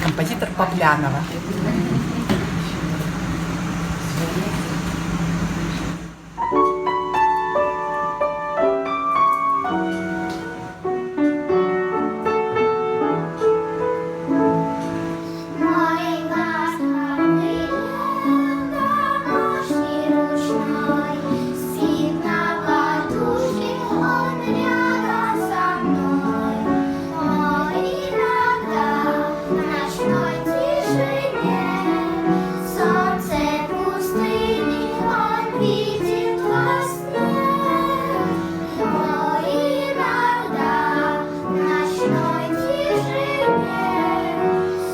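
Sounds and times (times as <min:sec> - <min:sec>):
piano accompaniment: 0:00.0 - 0:44.9
child singing: 0:15.6 - 0:44.9.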